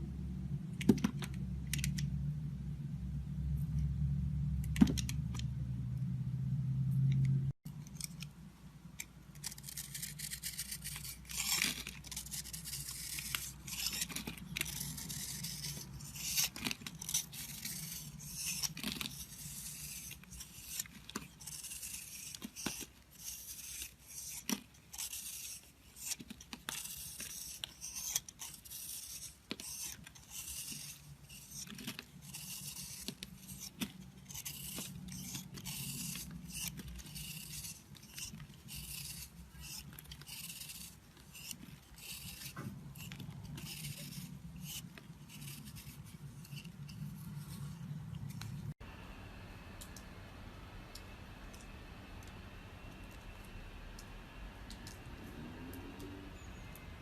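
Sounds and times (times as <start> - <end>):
low hum: 0.0 - 7.6
knife scraping soap: 9.0 - 48.5.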